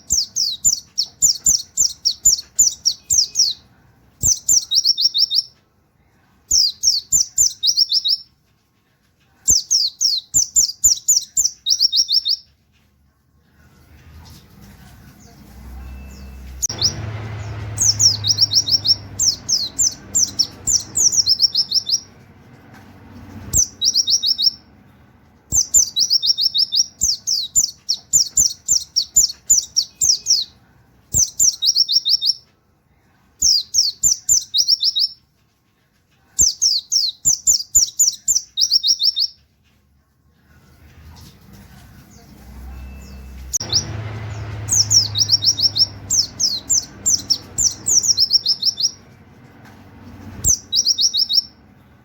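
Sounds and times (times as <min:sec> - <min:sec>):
bird singing rapid high notes: 0:00.0 - 0:05.6, 0:06.5 - 0:08.3, 0:09.5 - 0:12.5, 0:15.6 - 0:22.2, 0:23.4 - 0:24.7, 0:25.5 - 0:32.4, 0:42.7 - 0:49.2, 0:50.2 - 0:51.7.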